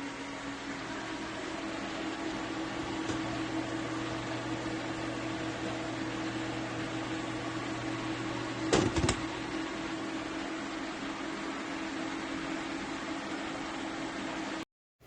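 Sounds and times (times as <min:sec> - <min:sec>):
induction hob fan hum: 0:00.0 - 0:14.6.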